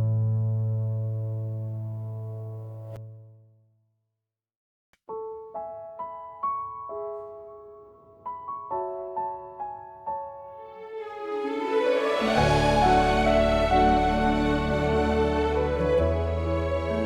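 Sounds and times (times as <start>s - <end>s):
solo piano melody: 5.1s - 17.0s.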